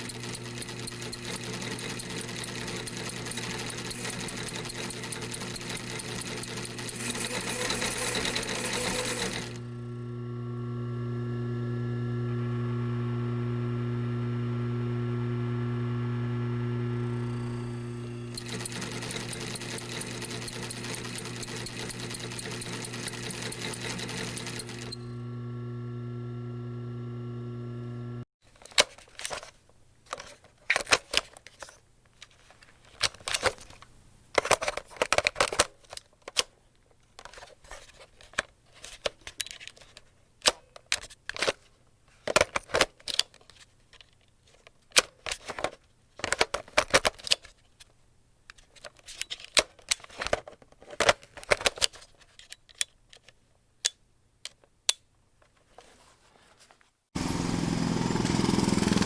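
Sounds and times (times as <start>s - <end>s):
sewing machine stitching: 0.0s - 10.1s, 16.8s - 27.3s, 57.2s - 59.0s
motor humming: 0.1s - 28.2s, 57.2s - 59.0s.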